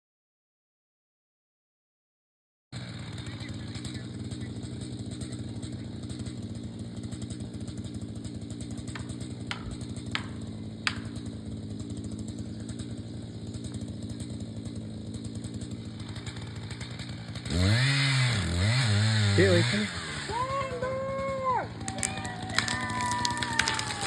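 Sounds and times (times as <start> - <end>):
chainsaw engine running: 2.8 - 24.0.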